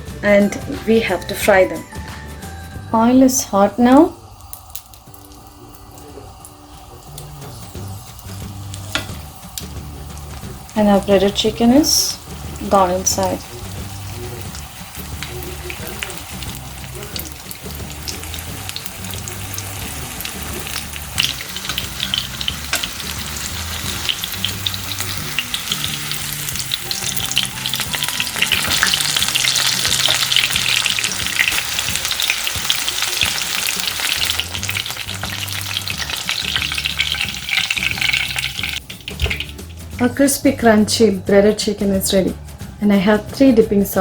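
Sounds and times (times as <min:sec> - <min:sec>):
chicken deep-frying in hot oil: 0:03.0 - 0:40.1.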